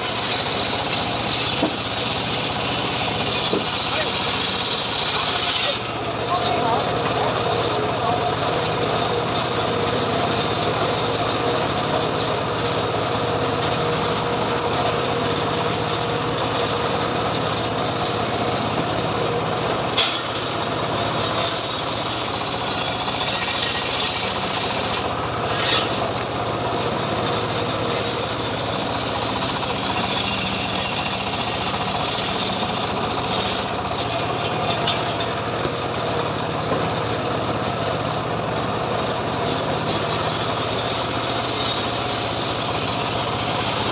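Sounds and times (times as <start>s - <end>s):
circular saw cutting wood: 0.0s - 43.9s.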